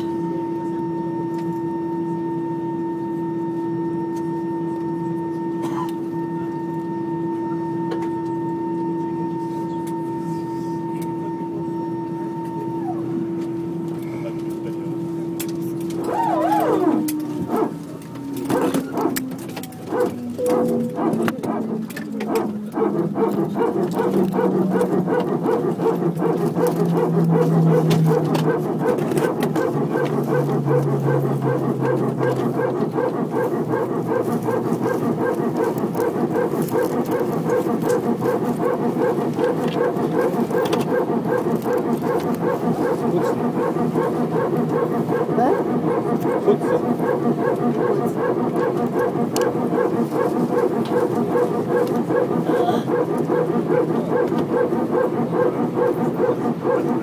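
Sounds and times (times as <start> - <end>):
hydraulic pump buzzing rattle: 15.4 - 57.0
low falling tone: 16.3 - 25.0.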